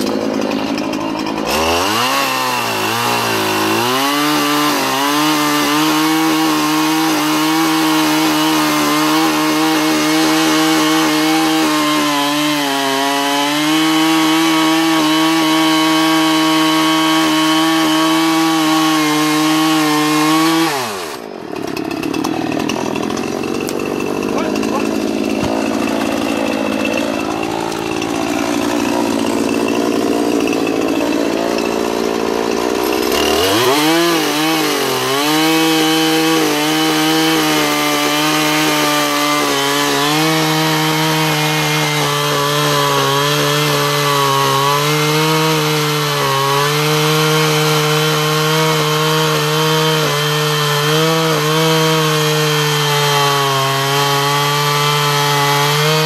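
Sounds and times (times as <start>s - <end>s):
chainsaw cutting wood: 0.0s - 56.0s.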